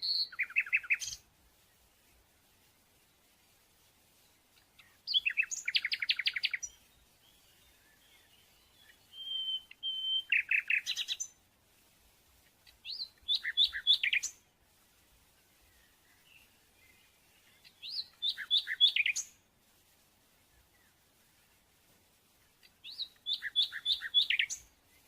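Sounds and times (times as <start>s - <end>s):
songbird chirping: 0.0s - 25.0s
bird whistled note: 9.1s - 10.6s.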